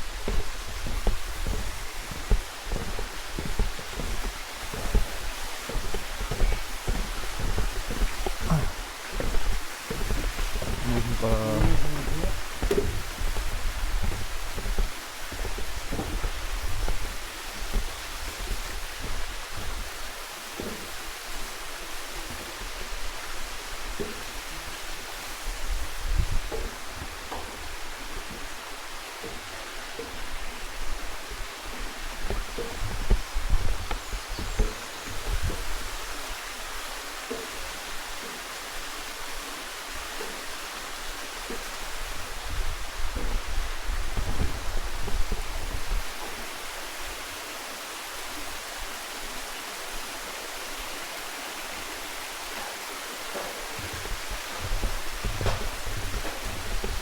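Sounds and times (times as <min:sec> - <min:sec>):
low thuds on microphone: 0:00.0 - 0:19.9
mountain stream rushing: 0:00.0 - 0:57.0.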